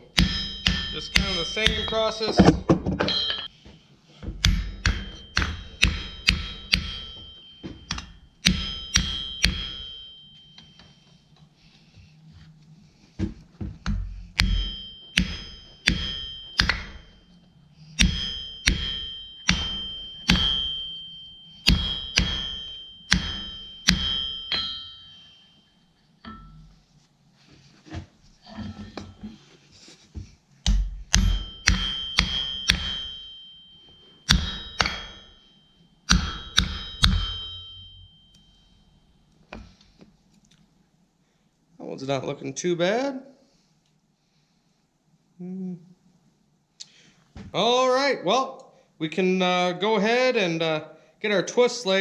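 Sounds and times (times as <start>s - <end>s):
hammer striking iron on anvil: 0.0s - 3.6s, 4.2s - 11.0s, 13.8s - 17.4s, 18.0s - 26.7s, 30.6s - 38.7s
anvil ringing: 0.0s - 11.4s, 13.9s - 26.8s, 28.4s - 29.5s, 30.7s - 39.8s.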